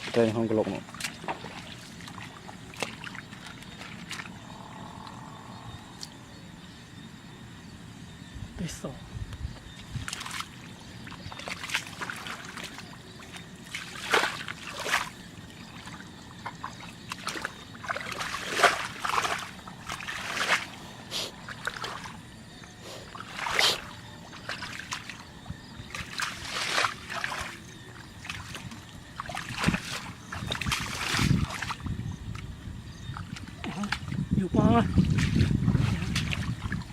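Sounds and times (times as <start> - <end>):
water splashing: 0.0 - 4.4, 10.0 - 22.3, 23.1 - 32.5, 33.1 - 36.9
water trickling: 9.9 - 36.9.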